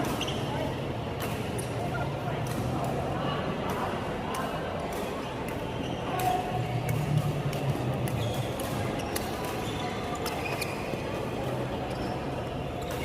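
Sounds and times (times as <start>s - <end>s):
rackets striking shuttlecock: 3.6s - 10.5s.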